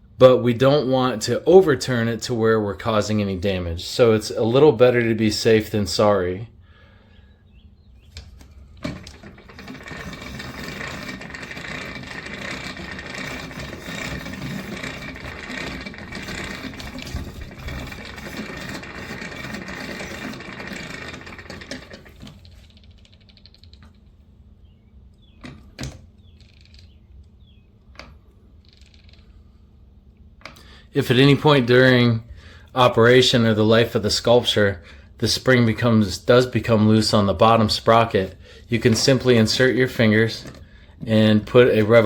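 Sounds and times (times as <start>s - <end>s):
mechanical rattle of wheels: 8.2s - 24.2s, 25.2s - 29.4s, 38.6s - 42.0s.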